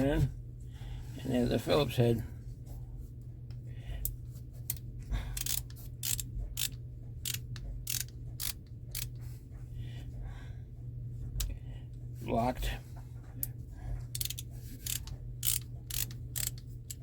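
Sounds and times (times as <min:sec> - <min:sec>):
ratcheting screwdriver clicking: 0:05.4 - 0:09.2, 0:14.1 - 0:17.0.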